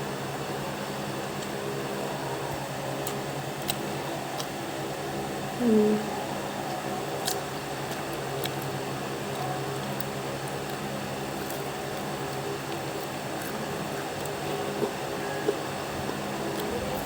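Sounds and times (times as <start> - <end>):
fan humming: 0.0 - 17.0
person eating crunchy snacks: 7.2 - 17.0.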